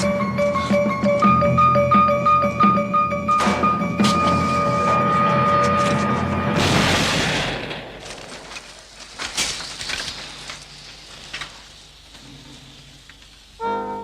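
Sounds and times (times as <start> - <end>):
falling debris clattering: 3.4 - 11.4
grenade explosion: 6.4 - 8.5.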